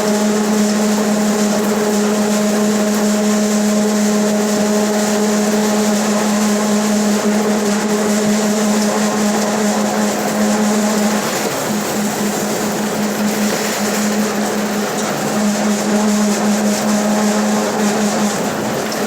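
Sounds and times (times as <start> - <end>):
bus differential whining: 0.0 - 19.0.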